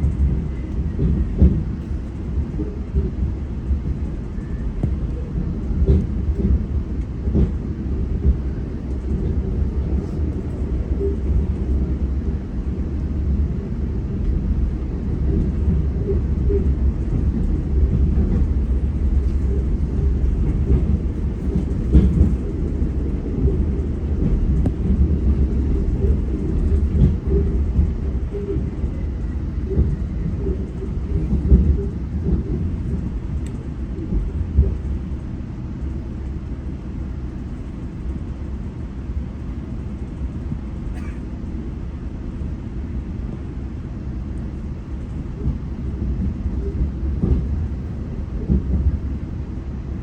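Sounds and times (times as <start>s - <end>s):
train knocks: 0.0s - 8.4s, 15.2s - 34.9s
train wheels rumbling on rail: 0.0s - 50.0s.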